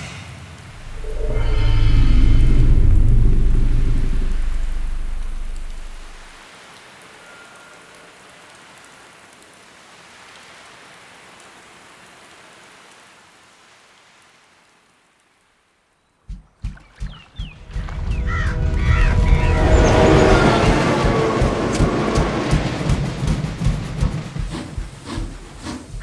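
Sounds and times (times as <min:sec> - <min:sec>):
rain hiss: 0:00.0 - 0:15.7
sharp low thumps: 0:00.7 - 0:06.4, 0:16.3 - 0:26.0.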